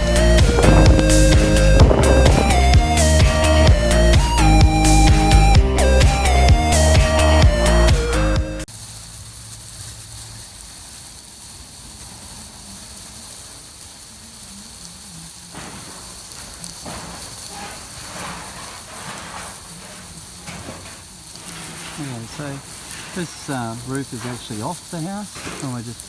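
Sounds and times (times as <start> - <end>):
low hum: 0.0 - 4.0
insulation blowing hiss: 0.0 - 5.5, 8.6 - 26.0
rough patchy rush: 0.0 - 26.0.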